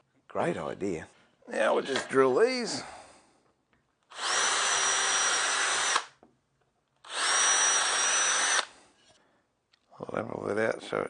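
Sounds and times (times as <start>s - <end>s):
cordless drill boring wood: 4.1s - 6.2s, 7.0s - 8.7s.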